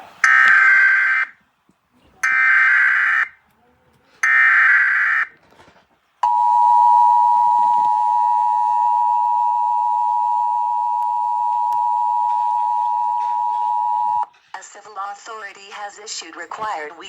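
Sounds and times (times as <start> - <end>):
two-tone alert tone: 6.2 - 14.2.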